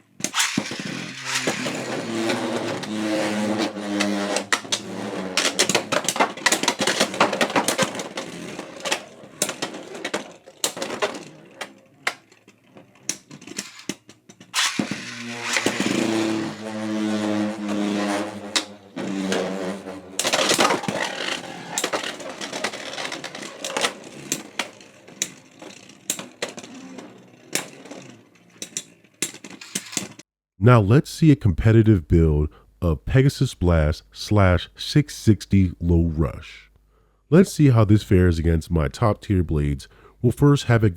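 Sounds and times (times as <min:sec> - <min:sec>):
spinning tops whirring: 0:00.0 - 0:30.2
spinning tops clacking: 0:00.2 - 0:30.2.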